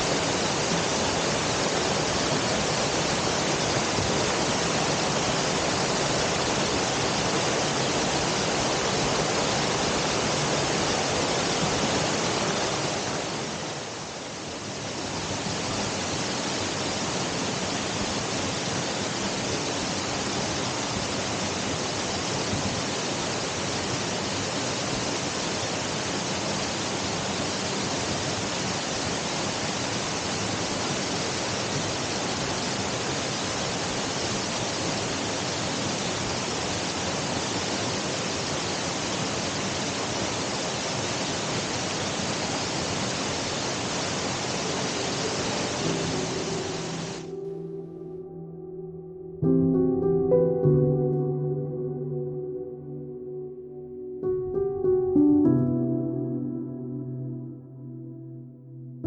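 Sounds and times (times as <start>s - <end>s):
waterfall rushing: 0.0s - 47.6s.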